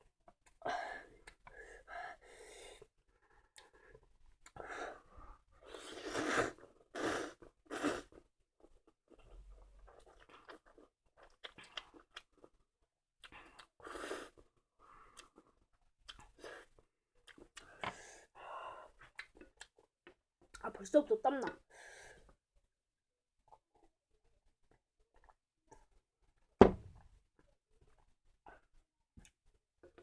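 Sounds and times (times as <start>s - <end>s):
person chewing noodles: 5.6s - 12.6s, 13.2s - 18.0s, 18.9s - 20.6s, 24.7s - 26.0s.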